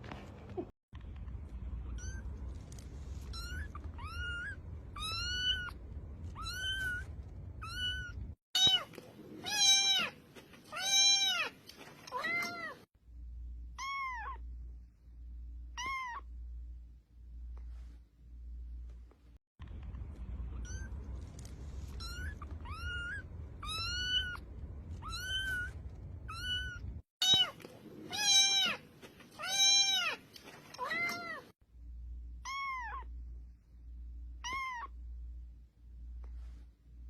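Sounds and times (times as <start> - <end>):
cat meowing: 3.3 - 12.8, 15.8 - 16.3, 29.4 - 31.5, 32.4 - 33.1, 34.4 - 35.0.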